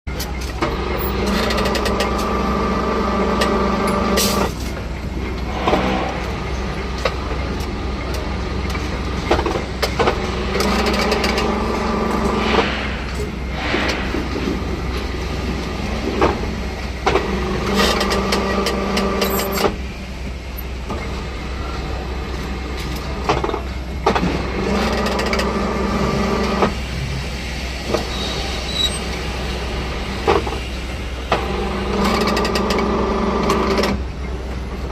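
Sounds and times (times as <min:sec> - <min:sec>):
steady low machine hum: 0:01.1 - 0:22.8
sharp machine knocks: 0:12.2 - 0:16.5.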